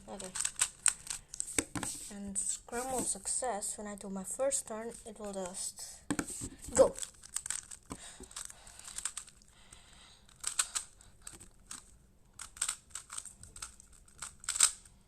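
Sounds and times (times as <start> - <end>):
plastic cube clicking while turned: 0.1 - 1.8, 5.4 - 9.5, 10.2 - 14.9.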